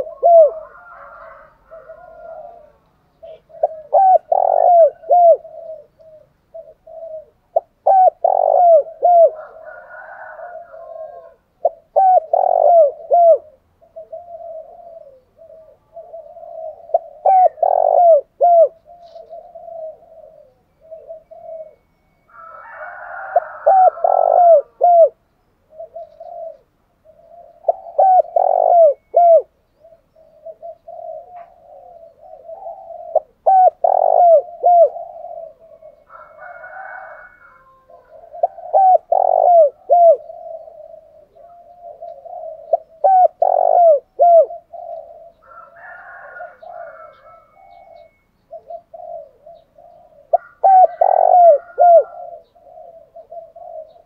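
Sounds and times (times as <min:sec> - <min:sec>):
doves cooing: 0:00.0 - 0:54.0.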